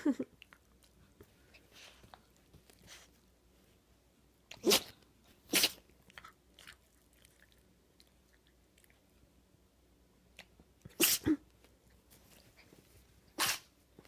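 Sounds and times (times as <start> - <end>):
dog sneezing: 4.5 - 5.9, 10.9 - 11.4, 13.4 - 13.8.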